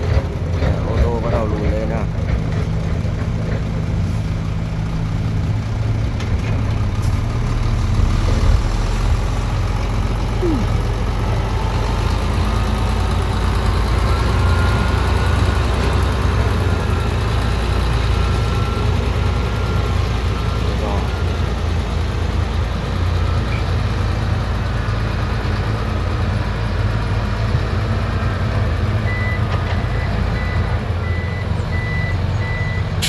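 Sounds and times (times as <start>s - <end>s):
heavy diesel engines running: 0.0s - 33.0s.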